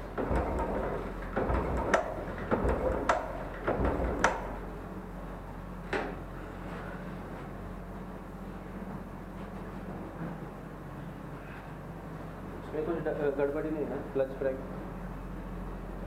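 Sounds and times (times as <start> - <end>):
hard objects knocking: 0.0 - 4.6.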